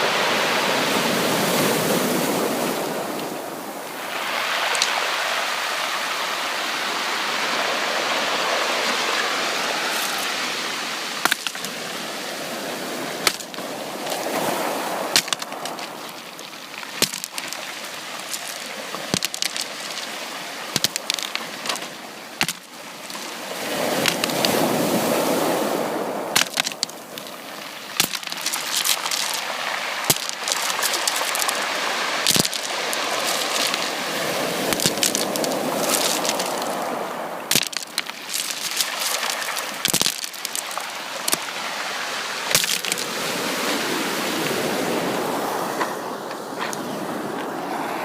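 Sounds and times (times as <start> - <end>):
sea waves breaking on shore: 0.0 - 48.0
sharp clicks and cracks: 11.2 - 11.7, 15.2 - 17.6, 18.2 - 20.1, 20.8 - 23.2, 26.4 - 27.3, 28.0 - 29.4, 30.1 - 31.6, 32.2 - 33.9, 34.7 - 36.8, 37.5 - 41.4, 42.5 - 43.0.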